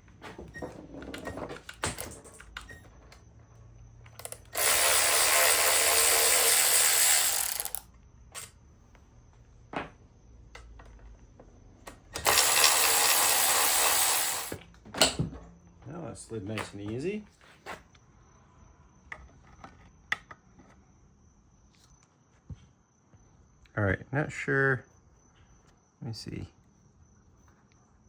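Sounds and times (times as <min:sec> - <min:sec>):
power tool running: 0:04.2 - 0:07.8, 0:12.2 - 0:14.6
clicks and knocks of metal parts: 0:07.3 - 0:08.6.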